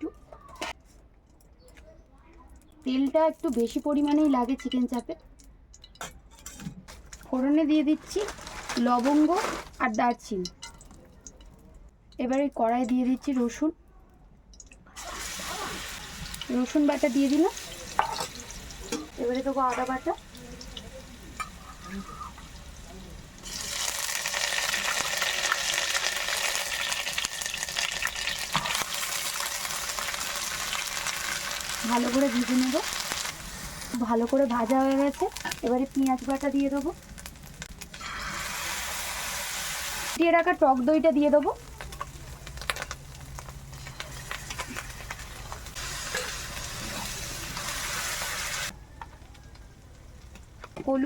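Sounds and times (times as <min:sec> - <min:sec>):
oil spattering crackles: 0:02.4 - 0:13.6, 0:14.4 - 0:51.0
paste sizzling in hot oil: 0:15.0 - 0:48.7.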